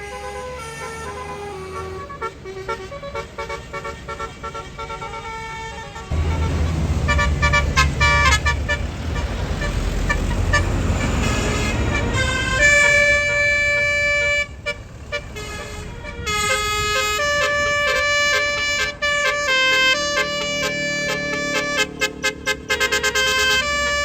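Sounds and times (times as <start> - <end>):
bus engine running: 0.0 - 24.0
multi-tone horn playing a tune: 0.0 - 24.0
short choppy horn toots: 6.0 - 23.8.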